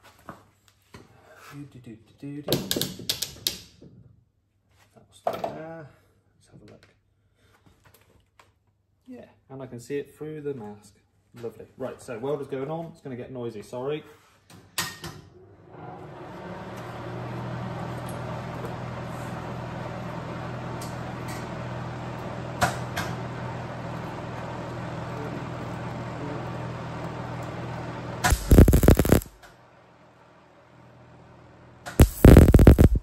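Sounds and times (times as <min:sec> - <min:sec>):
welder fan and transformer humming: 0:16.3 - 0:29.5, 0:30.8 - 0:33.0
welding arc crackling: 0:28.2 - 0:29.4, 0:31.9 - 0:33.0.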